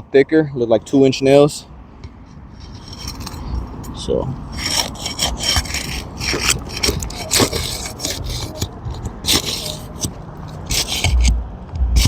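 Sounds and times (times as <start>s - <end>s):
metal hook scraping shingle: 2.2s - 11.4s.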